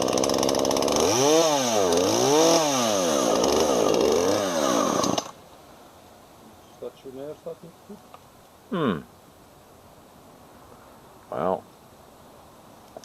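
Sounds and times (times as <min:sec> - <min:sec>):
chainsaw engine revving: 0:00.0 - 0:05.4.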